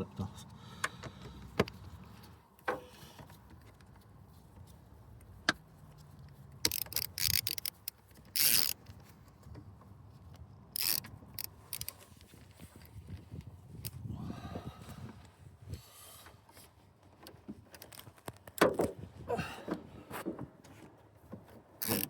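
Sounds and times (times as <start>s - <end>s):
tools and metal parts clicking: 6.6s - 9.0s, 10.7s - 12.9s.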